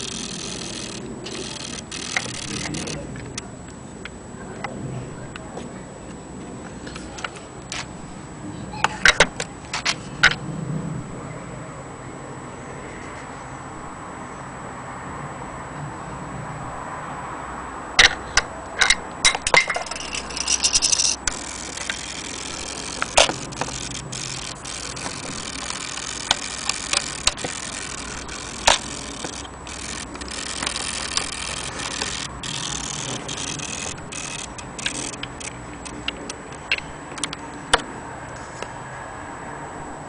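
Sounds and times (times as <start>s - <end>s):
camera mechanism clicks: 0.0s - 3.4s, 18.8s - 37.4s
handling noise: 0.0s - 3.5s, 18.0s - 37.9s.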